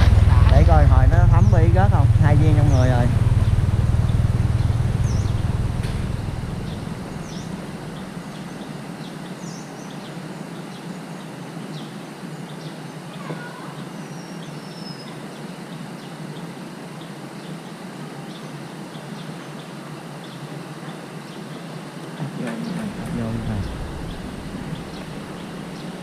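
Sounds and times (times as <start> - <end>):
low engine rumble: 0.0 - 9.0, 22.2 - 26.0
small birds chirping: 0.6 - 26.0.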